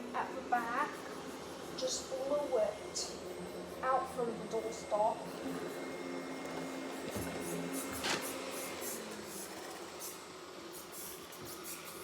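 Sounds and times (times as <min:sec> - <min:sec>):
robot vacuum motor hum: 0:00.2 - 0:11.9
brush scuffing: 0:07.9 - 0:08.3.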